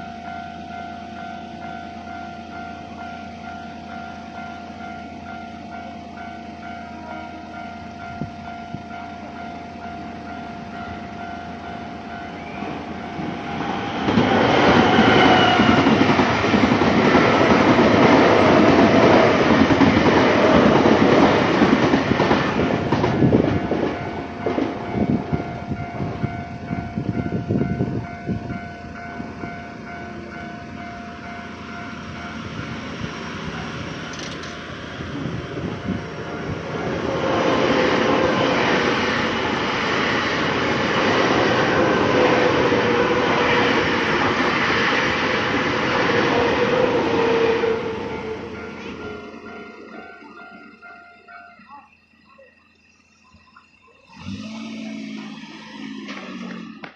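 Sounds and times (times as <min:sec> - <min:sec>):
crossing warning bell ringing: 0:00.0 - 0:56.9
train wheels clattering over rail joints: 0:13.3 - 0:25.5, 0:34.1 - 0:34.7.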